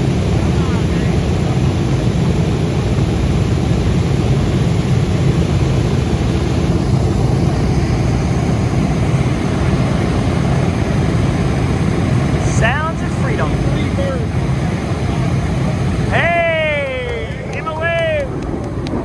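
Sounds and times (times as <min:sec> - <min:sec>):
aircraft engines rumbling: 0:00.0 - 0:19.0.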